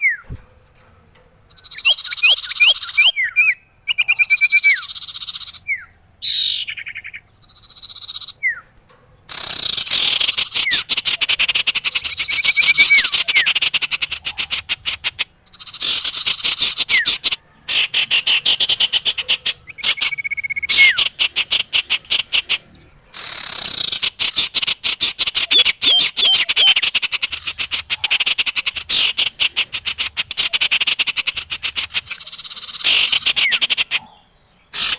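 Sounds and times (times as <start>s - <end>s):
bird whistled notes: 0.0s - 0.3s, 1.5s - 8.7s, 9.3s - 13.7s, 15.6s - 21.1s, 25.4s - 27.5s, 32.1s - 33.8s
songbird chattering trills: 1.5s - 34.9s.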